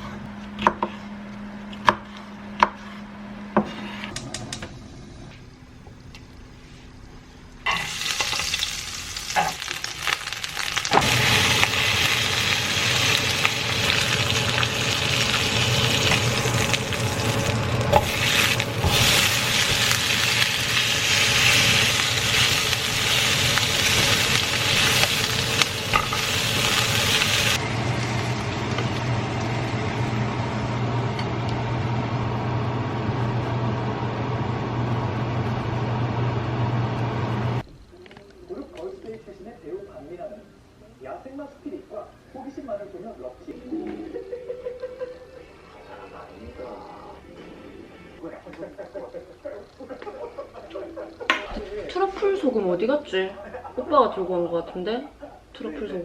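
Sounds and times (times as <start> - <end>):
food sizzling in frying pan: 7.7 - 37.6.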